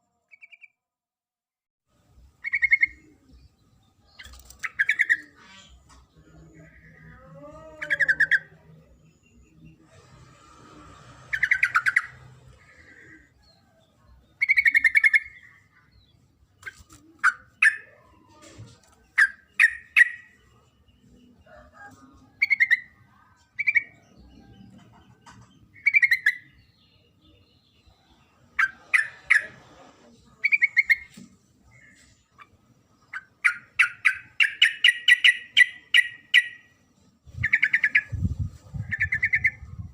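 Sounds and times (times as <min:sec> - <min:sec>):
bulbul calling: 0:02.4 - 0:03.2, 0:04.2 - 0:05.8, 0:11.3 - 0:13.3, 0:14.4 - 0:15.7, 0:16.6 - 0:18.1, 0:19.2 - 0:20.5, 0:30.4 - 0:36.7, 0:37.3 - 0:39.9.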